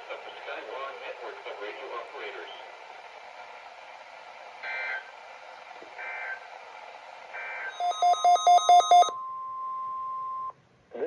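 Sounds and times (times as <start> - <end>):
steady warning alarm tone: 4.6 - 5.1, 6.0 - 6.5, 7.3 - 10.5
data chirps: 7.7 - 9.8.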